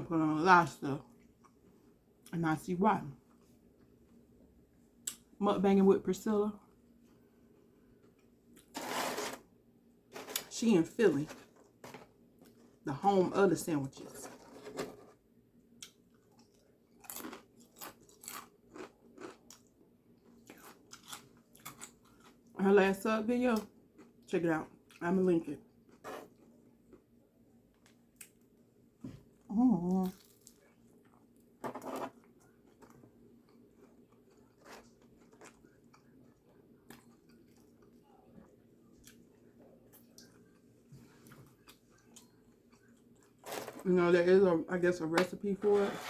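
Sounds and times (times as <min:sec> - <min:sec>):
sandwich chewing and crunching: 0:15.8 - 0:22.6, 0:30.0 - 0:43.8.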